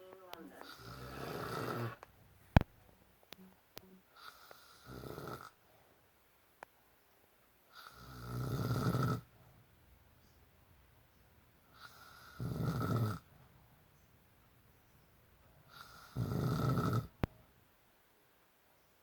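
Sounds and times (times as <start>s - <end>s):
man snoring: 0.6s - 2.0s, 4.2s - 5.6s, 7.7s - 9.3s, 11.7s - 13.3s, 15.7s - 17.2s.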